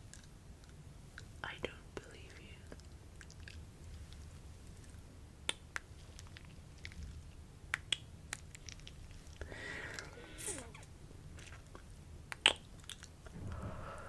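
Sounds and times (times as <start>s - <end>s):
wet lip and tongue clicks: 0.0s - 1.4s, 2.0s - 13.3s
breathy exhale: 9.4s - 10.7s, 13.4s - 14.0s.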